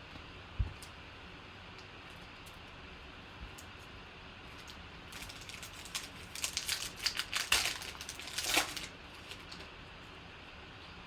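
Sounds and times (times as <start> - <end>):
wrapper crinkling and tearing: 4.5 - 9.7.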